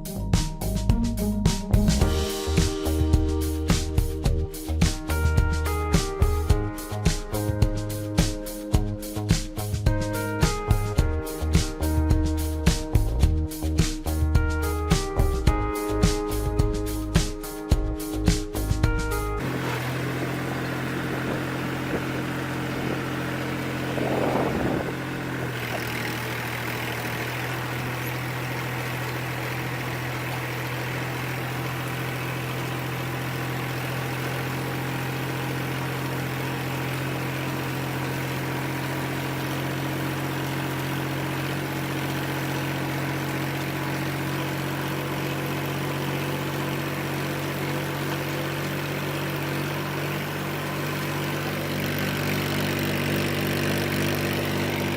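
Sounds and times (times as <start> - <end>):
farm machine engine running: 19.4 - 54.9.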